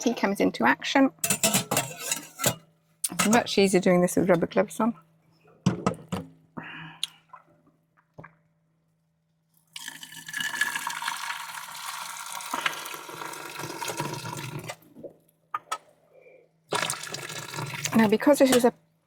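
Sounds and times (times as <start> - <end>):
pan clinking: 1.2 - 3.5
water pouring through strainer: 9.7 - 14.8, 16.7 - 18.3.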